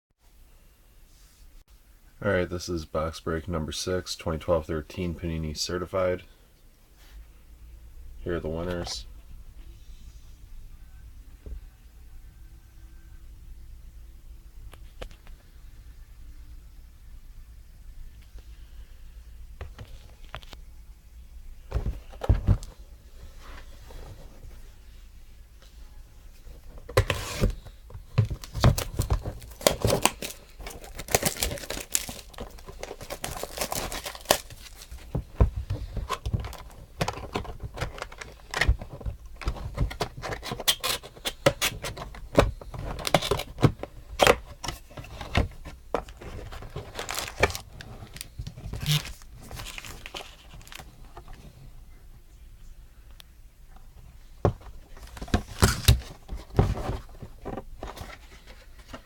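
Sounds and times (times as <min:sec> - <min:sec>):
cardboard and wrappers tearing: 0:28.3 - 0:35.2, 0:46.6 - 0:50.8.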